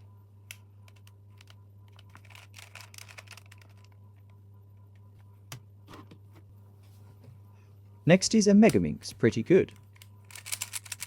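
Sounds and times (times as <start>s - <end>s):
steady low hum: 0.0s - 11.0s
puzzle cube clicking: 10.3s - 11.0s.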